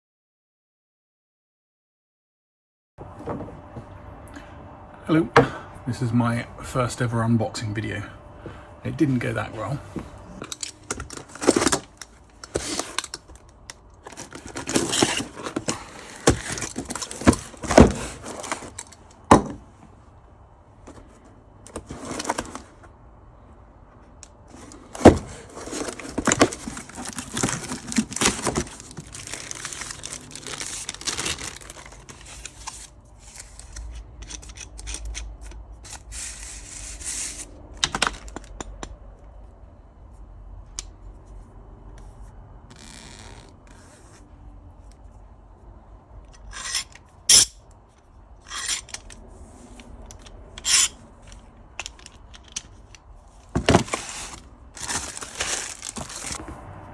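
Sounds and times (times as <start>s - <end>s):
packaging tearing and crinkling: 10.5s - 19.0s, 24.7s - 38.6s, 53.6s - 56.4s
metal parts knocking and clinking: 46.3s - 47.6s, 48.4s - 49.2s, 50.1s - 53.0s.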